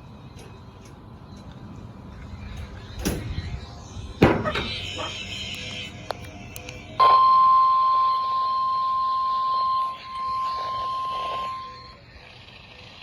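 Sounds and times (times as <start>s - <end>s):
high steady alarm tone: 7.0s - 12.5s.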